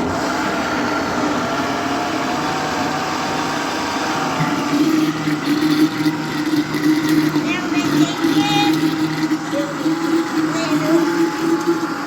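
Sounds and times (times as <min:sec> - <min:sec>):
batter churning: 0:00.0 - 0:12.0
blender motor whine: 0:00.0 - 0:12.0.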